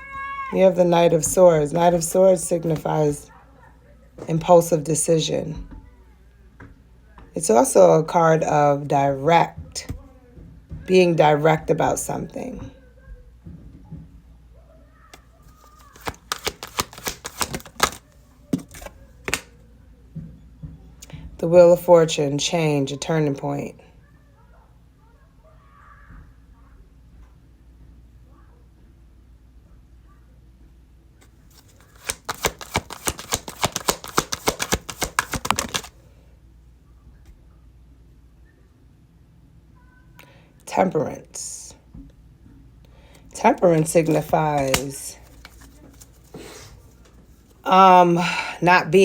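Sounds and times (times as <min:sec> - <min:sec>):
cards clicking and tapping: 0:15.5 - 0:19.5, 0:31.5 - 0:36.0, 0:43.6 - 0:47.2.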